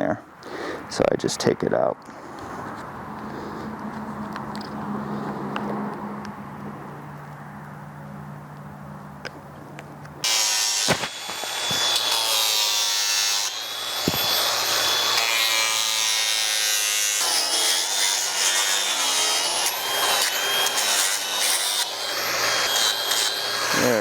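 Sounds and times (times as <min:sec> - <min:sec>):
power tool grinding plastic: 0:10.2 - 0:24.0.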